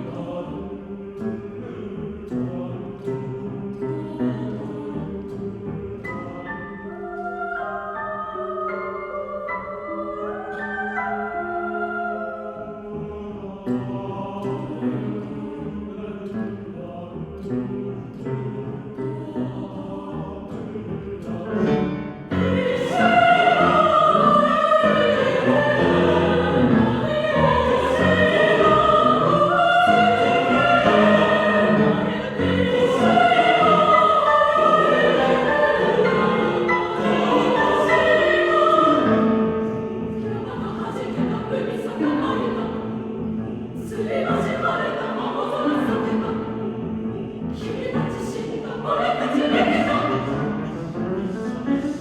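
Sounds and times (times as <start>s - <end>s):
mixed choir singing: 0.0s - 52.0s
piano accompaniment: 17.5s - 48.2s.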